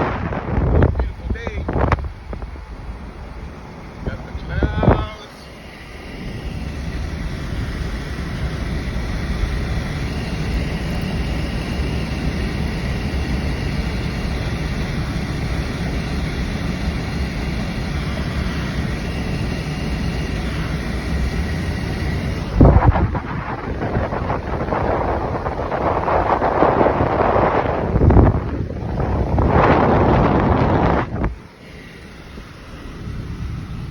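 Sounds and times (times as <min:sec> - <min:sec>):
vehicle road rumble and hiss: 0:00.0 - 0:33.9
wind noise: 0:00.0 - 0:33.9.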